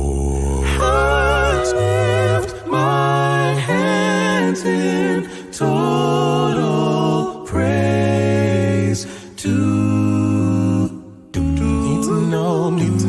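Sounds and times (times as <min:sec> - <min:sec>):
gospel singing in harmony: 0:00.0 - 0:13.0.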